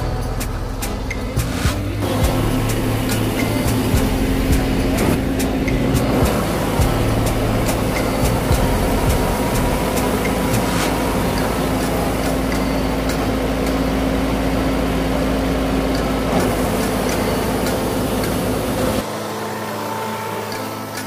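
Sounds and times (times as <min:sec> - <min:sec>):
combine harvester engine rumble: 0:00.0 - 0:19.3.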